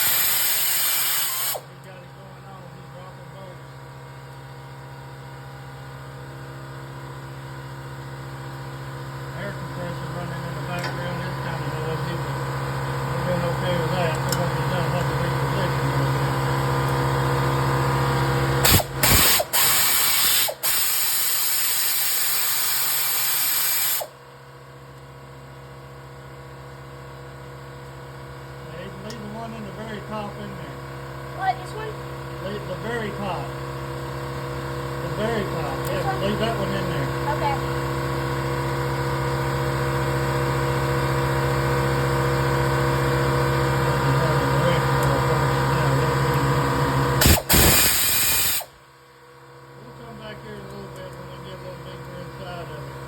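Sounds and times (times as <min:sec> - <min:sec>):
air ratchet hissing: 0:00.0 - 0:01.6, 0:18.7 - 0:24.1, 0:47.2 - 0:48.7
air compressor humming: 0:00.0 - 0:53.0.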